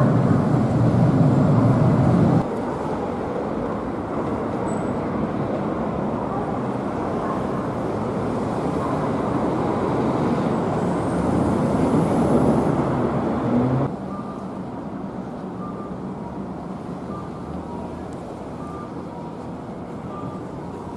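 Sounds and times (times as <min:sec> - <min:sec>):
vehicle rumbling past: 0:07.8 - 0:14.4.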